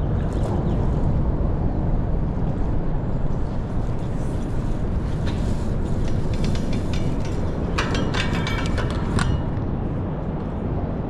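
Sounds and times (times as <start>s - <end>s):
low rumbling noise: 0.0s - 11.0s
faint ticks and clatter: 2.3s - 9.6s.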